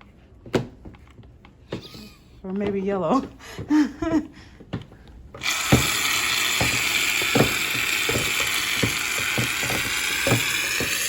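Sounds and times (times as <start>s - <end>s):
short irregular knocks: 4.7s - 11.0s.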